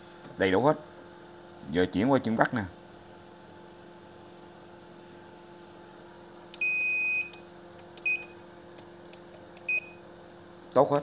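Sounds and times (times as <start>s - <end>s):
washing machine beeps: 6.6s - 7.4s, 8.0s - 8.4s, 9.6s - 10.0s.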